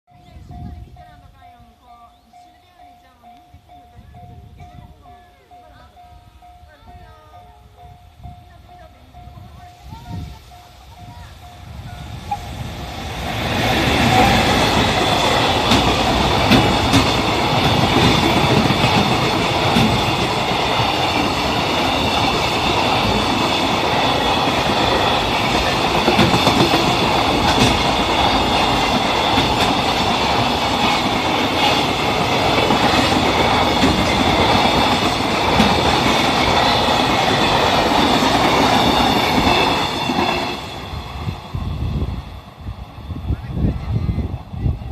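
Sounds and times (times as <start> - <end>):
freight train passing: 0.1 - 44.9.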